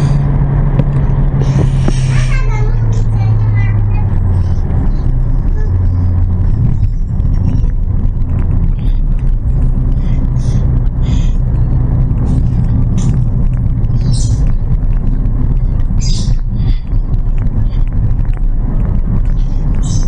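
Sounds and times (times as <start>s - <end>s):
car engine droning: 0.0s - 20.0s.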